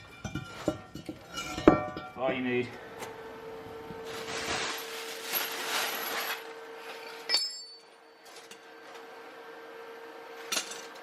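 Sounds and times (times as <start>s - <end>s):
metal handling noise: 0.0s - 2.4s
sharp metallic clink: 7.3s - 7.9s.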